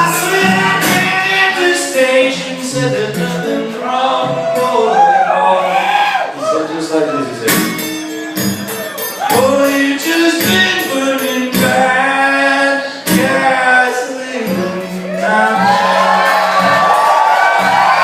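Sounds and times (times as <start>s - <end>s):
man singing: 0.0s - 6.1s, 9.2s - 16.9s
guitar accompaniment: 0.0s - 18.0s.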